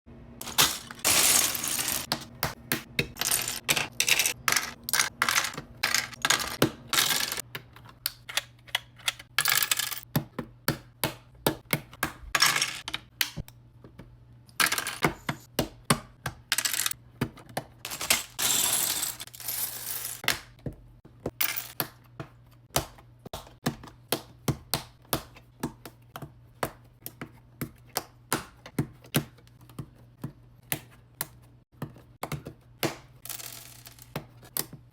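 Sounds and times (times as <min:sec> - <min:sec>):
loose plastic pieces rattling: 0:00.4 - 0:02.4, 0:03.0 - 0:10.0, 0:17.8 - 0:20.3, 0:33.2 - 0:34.2.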